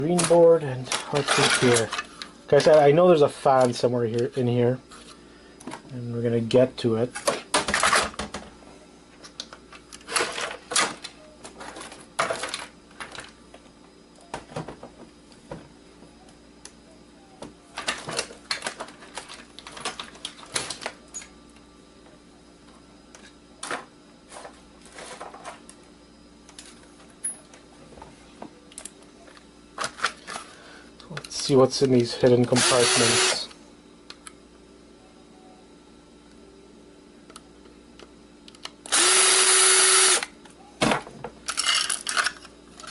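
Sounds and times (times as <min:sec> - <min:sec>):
plastic and metal parts clattering: 0:00.1 - 0:02.9, 0:10.0 - 0:13.3, 0:17.8 - 0:21.3, 0:40.8 - 0:42.9.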